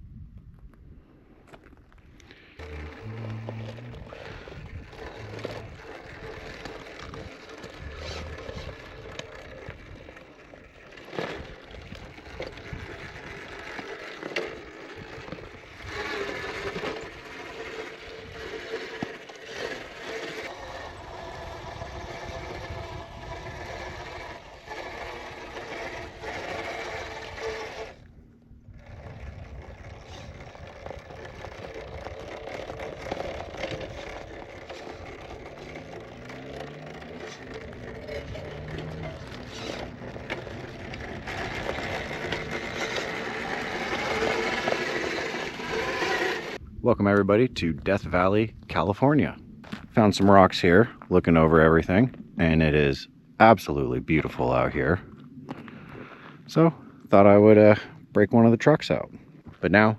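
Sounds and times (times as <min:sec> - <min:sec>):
tyres scraping over rock: 0:01.4 - 0:28.0, 0:28.8 - 0:46.6, 0:49.6 - 0:52.8
small electric motor whining: 0:02.0 - 0:46.6.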